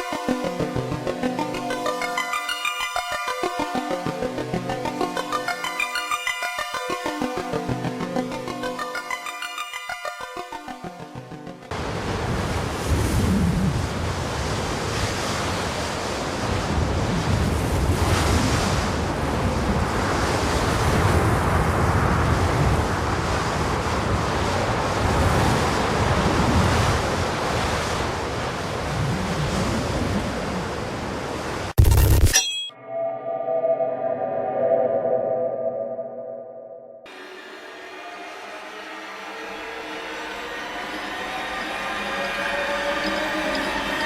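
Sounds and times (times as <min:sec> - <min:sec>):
surf-like rushing noise: 0:11.8 - 0:31.7.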